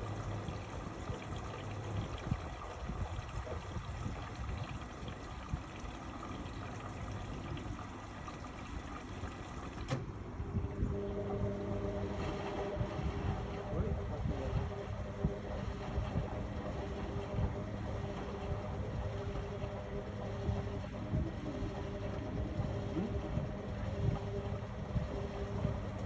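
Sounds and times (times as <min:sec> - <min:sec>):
water pouring: 0:00.0 - 0:09.9
steady hum: 0:00.0 - 0:26.0
washing machine running: 0:00.0 - 0:26.0.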